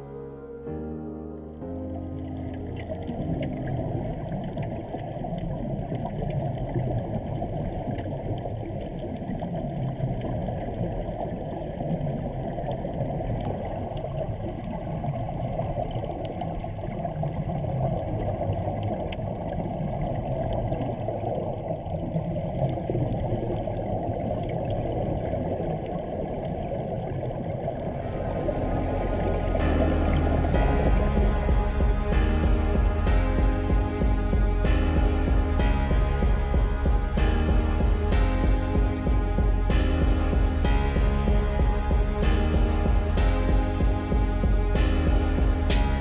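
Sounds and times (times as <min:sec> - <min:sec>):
water rushing along hull: 0:01.8 - 0:46.0.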